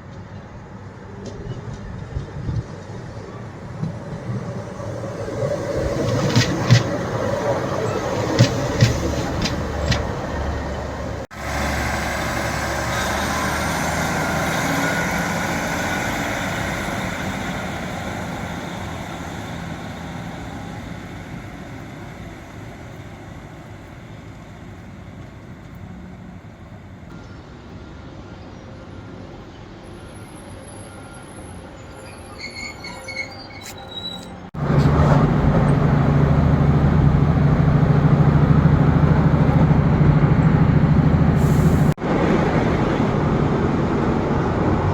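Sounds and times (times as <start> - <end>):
rail noise: 0.0 - 44.9
train running noise: 0.0 - 44.9
low diesel engine drone: 6.3 - 27.2, 34.6 - 44.9.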